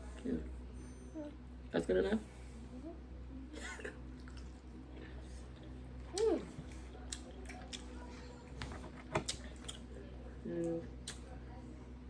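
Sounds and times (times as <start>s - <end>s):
chewing: 4.1s - 8.3s.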